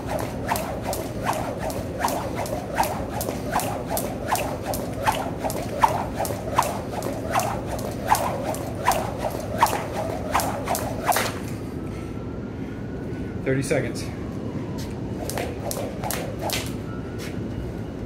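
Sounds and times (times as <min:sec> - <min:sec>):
jump rope slapping floor: 0:00.0 - 0:11.4, 0:15.3 - 0:16.7.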